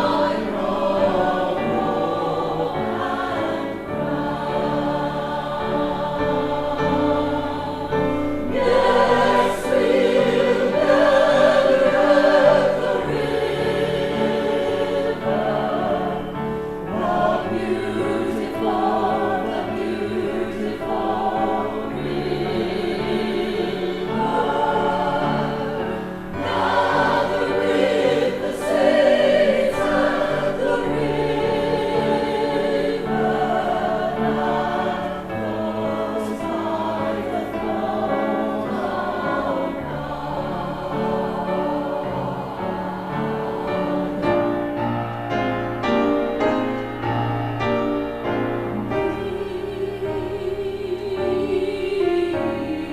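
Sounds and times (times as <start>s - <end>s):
church choir singing: 0.0s - 52.9s.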